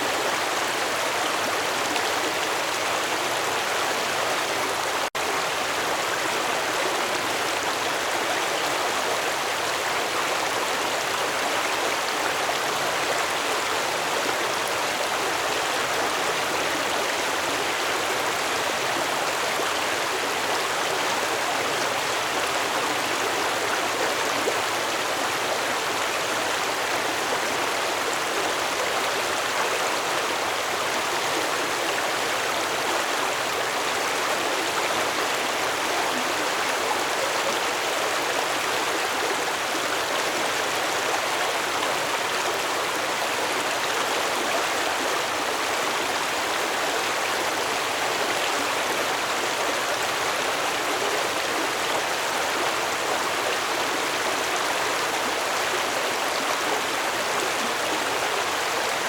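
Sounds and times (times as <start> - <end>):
stream water flowing over rocks: 0.0 - 59.0.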